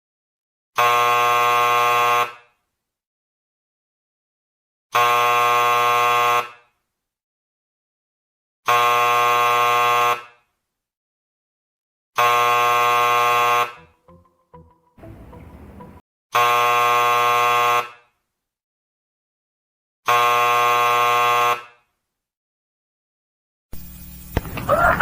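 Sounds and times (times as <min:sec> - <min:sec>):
electric buzzer: 0:00.8 - 0:02.6, 0:04.9 - 0:06.8, 0:08.6 - 0:10.5, 0:12.2 - 0:15.6, 0:16.3 - 0:18.1, 0:20.0 - 0:21.9.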